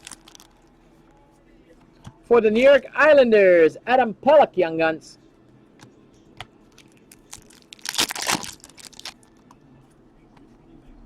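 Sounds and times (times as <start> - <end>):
foil wrapper crinkling: 0.0 - 0.6, 6.7 - 9.3.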